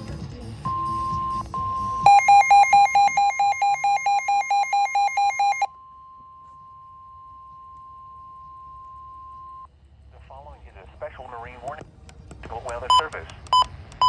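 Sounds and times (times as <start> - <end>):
pulsing electronic alarm beeps: 0.6 - 9.7
steady warning alarm tone: 0.6 - 9.7.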